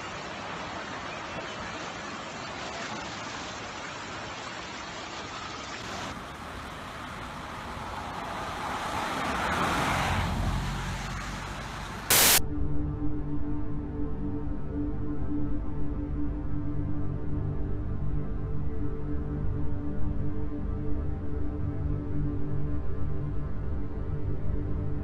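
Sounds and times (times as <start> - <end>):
floodwater rushing: 0.0 - 12.4
ominous music with sustained tones: 12.4 - 25.0.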